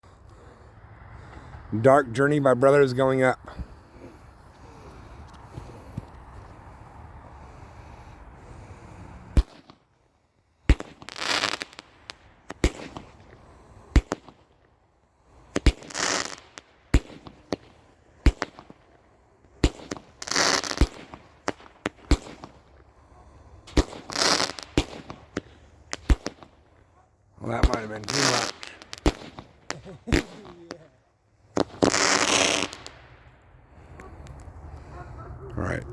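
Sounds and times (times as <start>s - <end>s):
firework bursts: 3.9s - 33.4s
firework shots: 8.4s - 33.4s
firework fuse hiss: 10.7s - 14.3s, 15.5s - 18.7s, 23.6s - 26.7s, 27.4s - 30.8s, 31.6s - 33.0s.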